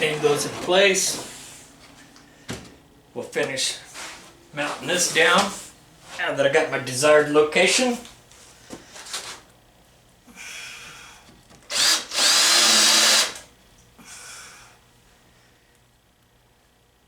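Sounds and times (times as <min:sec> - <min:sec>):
power drill driving screws: 0:11.7 - 0:13.5.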